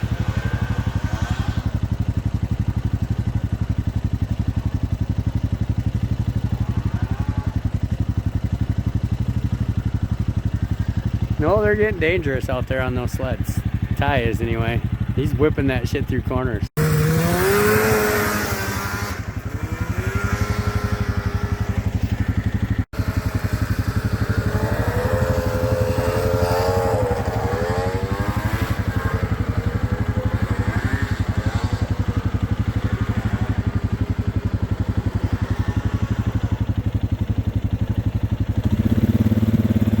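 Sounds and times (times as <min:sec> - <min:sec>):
snowmobile engines whining: 0:00.0 - 0:40.0.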